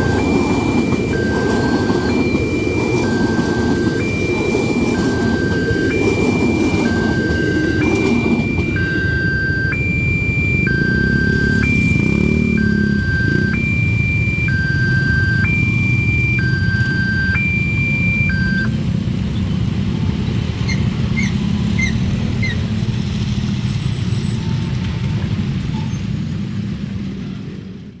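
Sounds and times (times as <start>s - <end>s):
level-crossing two-tone alarm: 0.0s - 18.8s
road traffic rumble: 0.0s - 28.0s.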